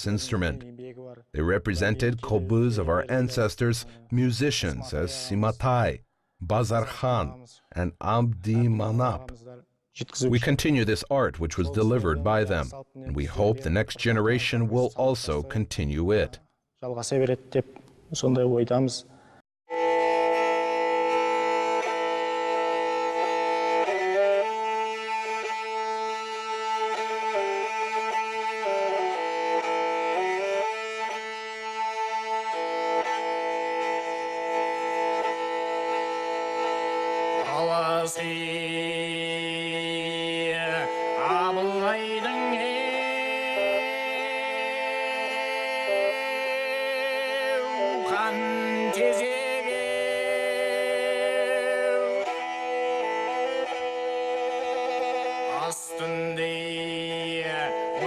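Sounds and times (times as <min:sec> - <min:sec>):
bowed string instrument melody: 0:19.7 - 0:58.0.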